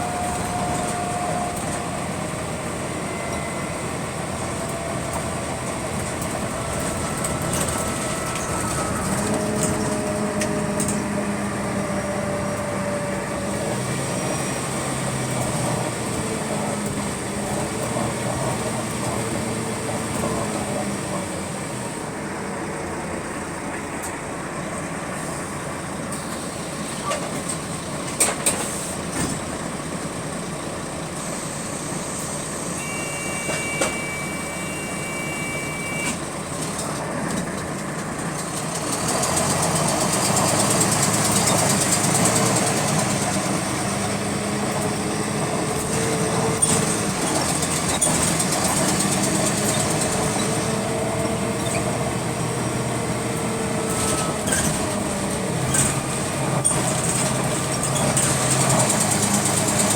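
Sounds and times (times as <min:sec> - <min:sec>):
bus diesel engine: 0:00.0 - 0:59.9
two-tone beep: 0:32.8 - 0:36.2.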